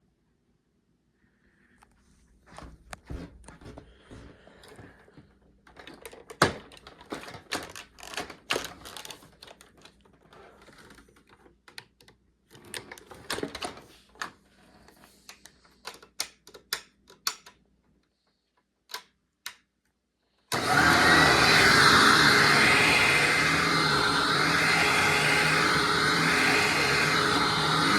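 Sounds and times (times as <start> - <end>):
upright vacuum running: 20.5 - 27.9.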